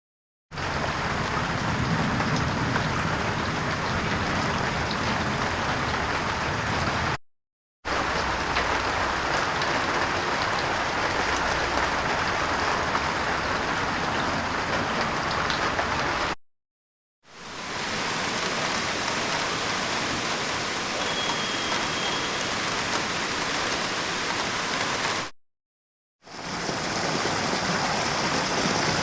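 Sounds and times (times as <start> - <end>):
rain falling steadily: 0.6 - 7.2, 7.9 - 16.4, 17.2 - 25.3, 26.2 - 29.0.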